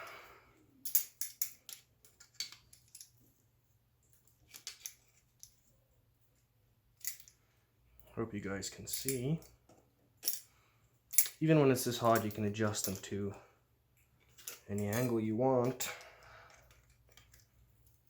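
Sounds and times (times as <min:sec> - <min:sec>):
metal hooks clicking and clinking: 0:00.8 - 0:03.2, 0:04.1 - 0:05.6, 0:07.0 - 0:07.4, 0:08.7 - 0:10.5, 0:11.1 - 0:13.2, 0:14.2 - 0:18.0.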